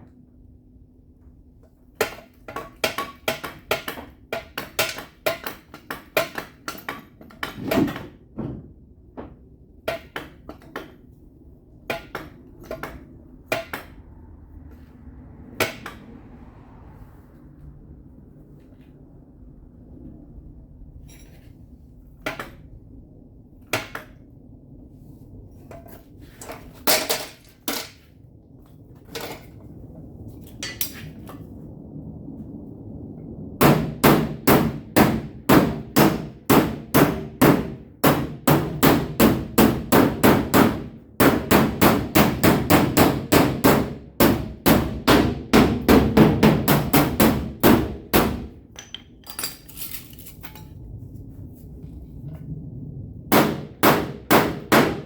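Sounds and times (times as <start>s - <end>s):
hammer striking sheet metal: 33.6s - 48.6s, 53.3s - 55.0s.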